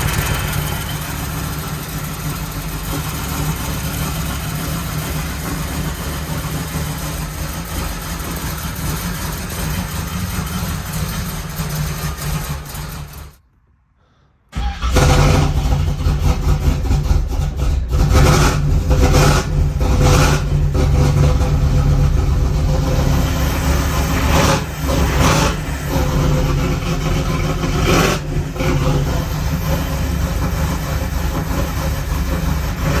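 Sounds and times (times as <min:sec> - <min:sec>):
engine revving blips: 0:00.0 - 0:13.3, 0:17.9 - 0:33.0
car engine running rough: 0:00.0 - 0:13.4, 0:14.6 - 0:33.0.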